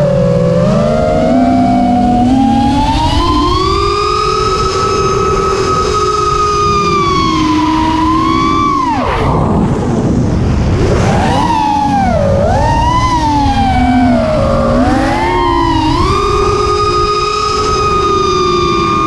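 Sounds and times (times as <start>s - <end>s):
quadcopter motors whining: 0.0s - 19.0s
rushing noise: 0.0s - 19.0s.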